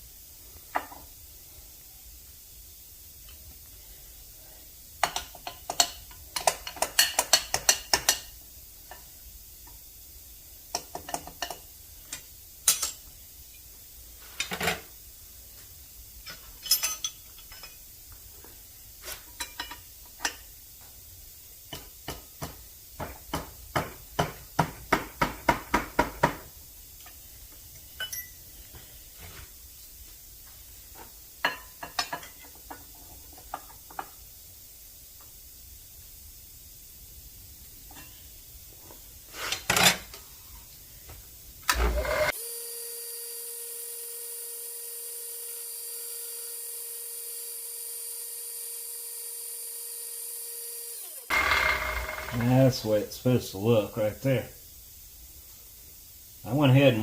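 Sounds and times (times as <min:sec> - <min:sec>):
metal tools clinking and clattering: 0:16.2 - 0:17.8, 0:28.0 - 0:28.4.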